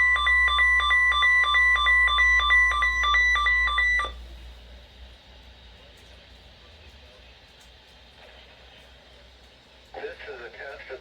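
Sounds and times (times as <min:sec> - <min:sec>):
two-tone electronic alarm beeping: 0:00.0 - 0:04.2.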